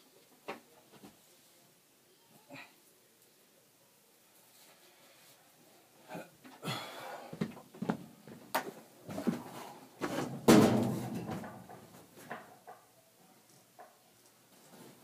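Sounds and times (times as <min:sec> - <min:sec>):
knocks and clatters: 0:09.2 - 0:12.9.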